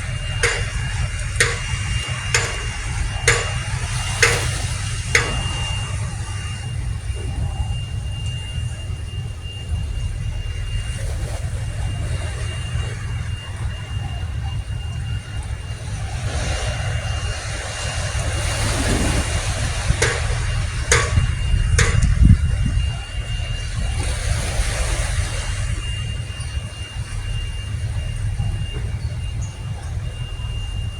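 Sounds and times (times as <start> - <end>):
road traffic rumble: 0.0 - 10.4, 11.6 - 30.4
sharp clicks: 0.4 - 5.6, 20.0 - 22.2.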